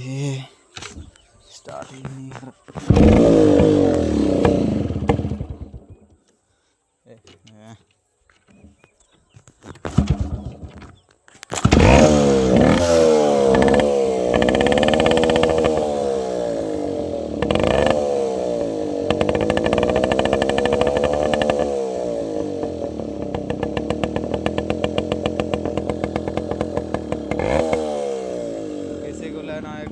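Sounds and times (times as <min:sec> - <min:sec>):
two-stroke motorcycle engine revving: 0:02.8 - 0:06.1, 0:09.9 - 0:10.9, 0:11.5 - 0:29.9.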